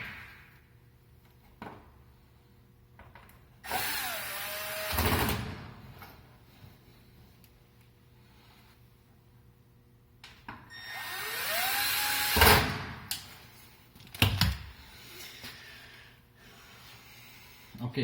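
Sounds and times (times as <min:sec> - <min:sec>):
power drill whining: 0:03.6 - 0:05.2, 0:10.7 - 0:12.6.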